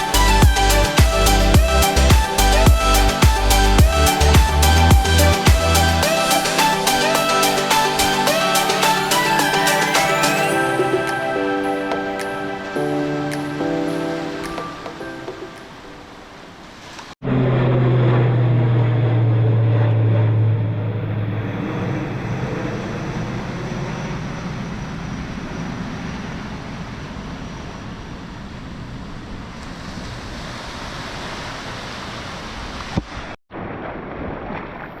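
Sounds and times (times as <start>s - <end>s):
broad rushing noise: 0.0s - 23.3s
airplane engine drone: 16.5s - 32.7s.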